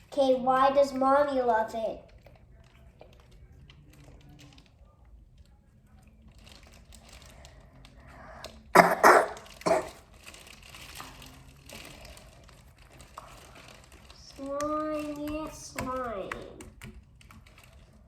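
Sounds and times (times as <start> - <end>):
person coughing: 8.8 - 10.0.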